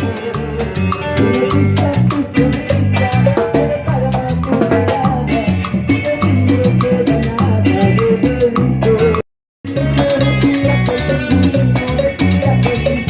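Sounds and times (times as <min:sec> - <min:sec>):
latin dance band playing: 0:00.0 - 0:13.0.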